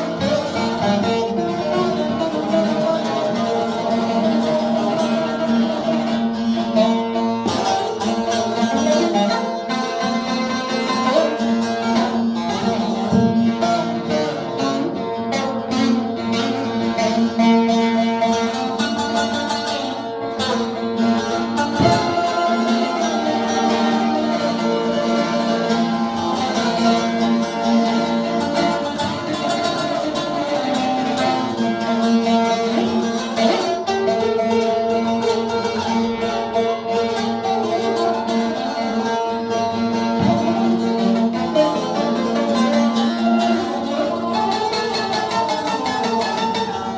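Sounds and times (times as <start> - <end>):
plucked string instrument music: 0.0 - 46.9.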